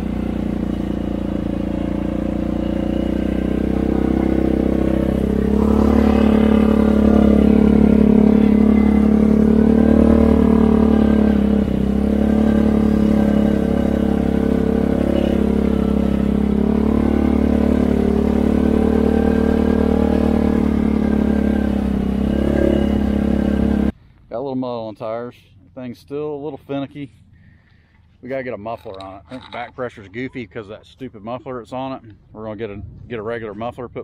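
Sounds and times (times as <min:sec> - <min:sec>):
engine running: 0:00.0 - 0:24.0.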